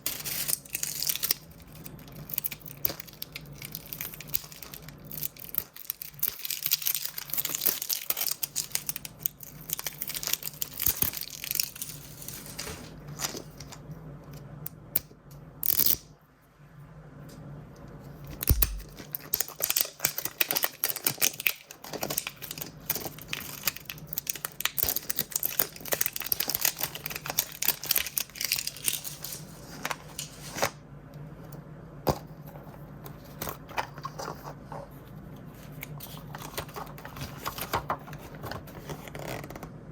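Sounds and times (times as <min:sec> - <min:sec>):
packaging ripping: 0:00.0 - 0:13.6, 0:18.3 - 0:30.8, 0:36.0 - 0:39.6
plastic wrapping crackling: 0:00.0 - 0:13.6, 0:18.3 - 0:30.7.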